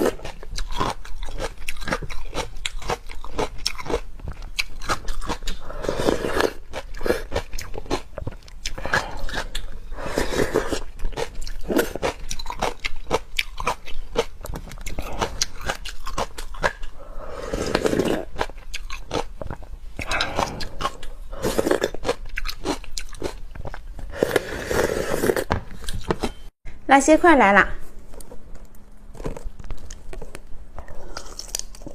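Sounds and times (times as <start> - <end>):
crunching and wet chewing: 0.0 - 26.4, 28.1 - 31.9
wet mouth sounds: 8.6 - 26.4.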